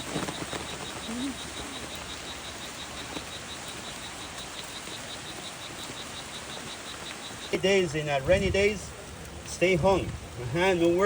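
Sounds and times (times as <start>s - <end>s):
high-pitched insect call pulsing: 0.0s - 7.9s
forest background hiss: 0.0s - 11.0s.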